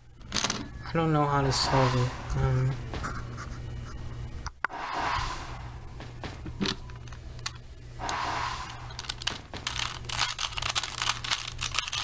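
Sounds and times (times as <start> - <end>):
puzzle cube clicking and rattling: 9.0 - 12.0.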